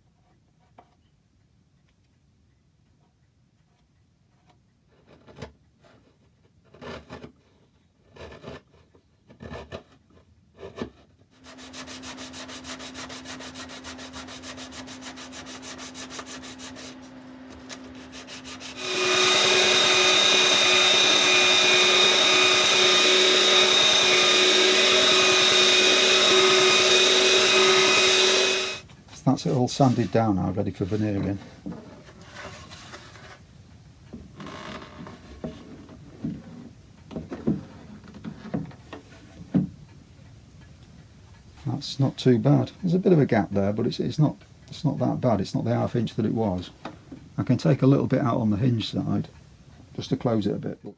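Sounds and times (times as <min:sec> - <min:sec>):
power sander running: 0:11.6 - 0:28.9.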